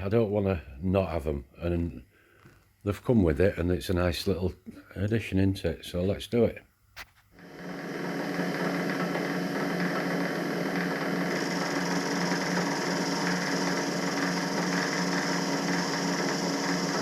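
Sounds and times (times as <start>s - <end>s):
milling machine motor hum: 7.4s - 17.0s.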